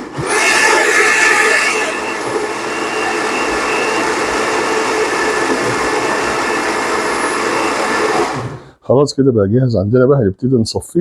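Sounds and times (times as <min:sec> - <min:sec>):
blender running: 0:00.0 - 0:08.7.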